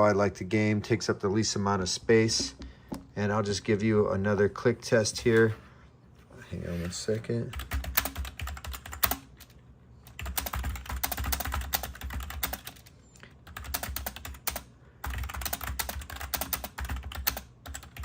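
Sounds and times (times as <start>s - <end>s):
fast typing on keyboard: 7.5s - 18.0s.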